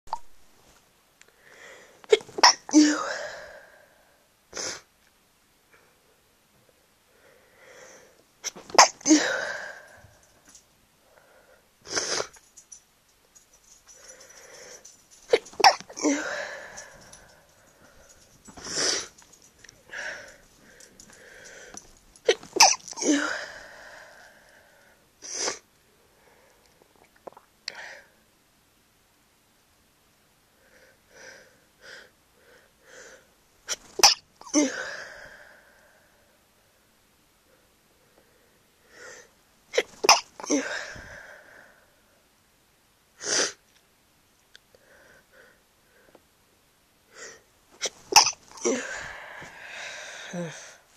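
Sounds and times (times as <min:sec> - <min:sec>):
person gasping breaths: 0:01.4 - 0:02.1, 0:02.8 - 0:04.8, 0:07.1 - 0:08.2, 0:13.9 - 0:15.0, 0:15.9 - 0:22.4, 0:23.0 - 0:25.5, 0:34.5 - 0:36.4, 0:40.5 - 0:42.2, 0:48.6 - 0:50.9
person sneezing: 0:02.1 - 0:03.4, 0:08.4 - 0:09.9, 0:11.9 - 0:12.4, 0:15.3 - 0:17.1, 0:18.6 - 0:19.1, 0:22.2 - 0:23.6, 0:33.7 - 0:35.0, 0:39.7 - 0:41.1, 0:47.8 - 0:50.8
person breathing out: 0:15.9 - 0:19.2, 0:19.8 - 0:21.9, 0:48.6 - 0:50.9.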